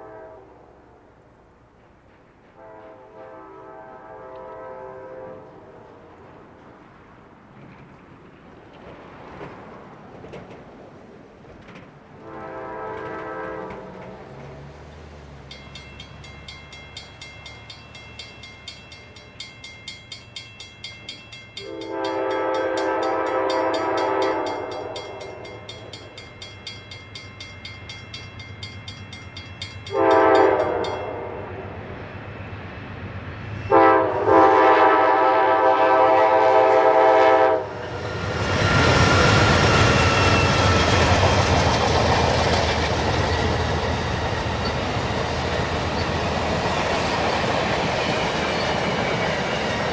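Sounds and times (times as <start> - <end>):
locomotive horn blasts: 0.0 - 1.2, 2.6 - 6.2, 12.2 - 14.4, 21.6 - 25.7, 29.9 - 31.8, 33.6 - 37.9
train wheels clattering on rails: 1.6 - 3.7, 5.8 - 31.4, 37.6 - 49.9.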